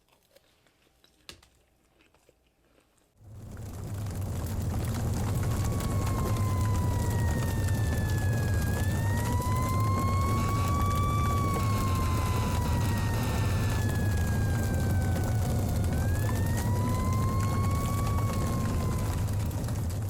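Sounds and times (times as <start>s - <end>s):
low rumble: 3.2s - 20.0s
siren wailing: 4.4s - 20.0s.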